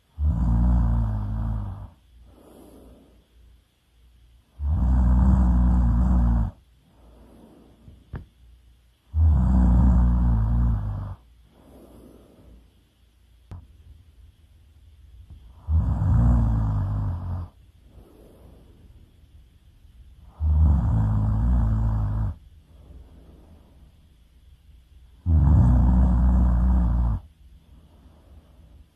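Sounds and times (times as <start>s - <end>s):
person snoring: 0.0s - 3.2s, 4.5s - 8.2s, 9.1s - 12.7s, 15.4s - 19.0s, 20.2s - 24.0s, 25.2s - 28.8s
soft breath: 0.0s - 13.9s, 15.2s - 28.9s.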